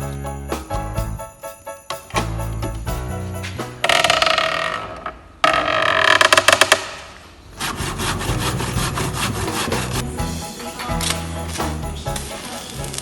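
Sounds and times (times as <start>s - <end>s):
rasping scraping swells: 7.4s - 11.0s.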